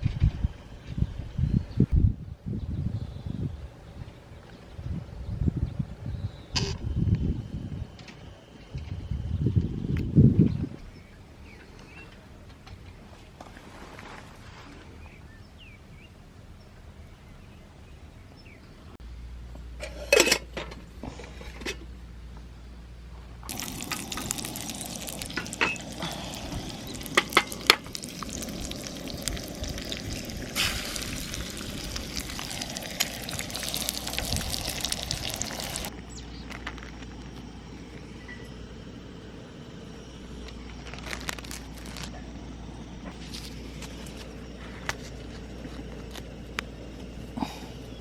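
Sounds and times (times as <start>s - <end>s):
liquid hissing in a pan: 23.5s - 35.9s.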